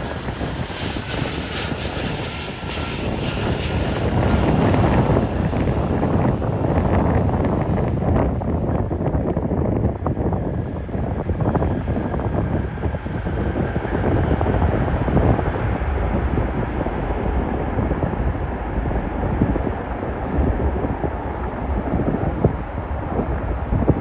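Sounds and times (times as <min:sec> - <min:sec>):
jet engines rumbling: 0:00.0 - 0:24.0
wind buffeting microphone: 0:00.0 - 0:24.0
faint whine: 0:12.7 - 0:24.0.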